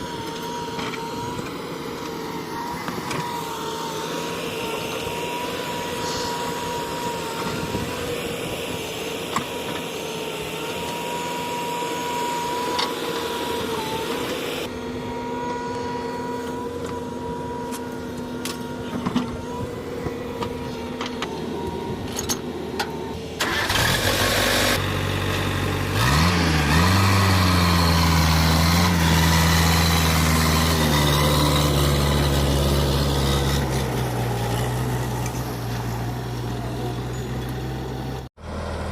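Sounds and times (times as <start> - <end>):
diesel engines running: 0.0 - 38.9
engine revving: 23.1 - 38.9.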